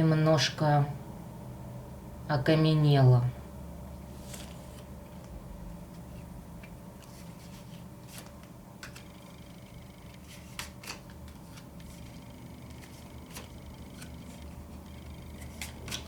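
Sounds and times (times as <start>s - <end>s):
steady low hum: 0.0s - 16.0s
cards clicking and sliding: 4.2s - 16.0s.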